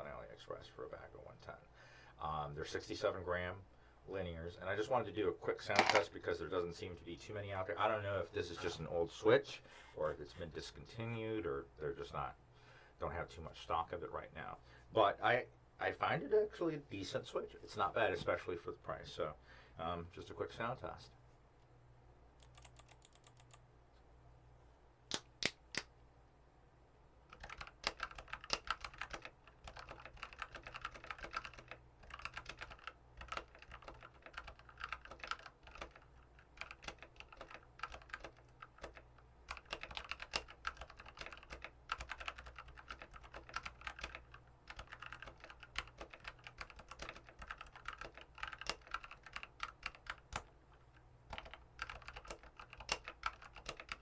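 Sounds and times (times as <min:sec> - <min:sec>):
mechanical keyboard typing: 0:22.4 - 0:23.6, 0:27.3 - 0:50.5, 0:51.3 - 0:54.0.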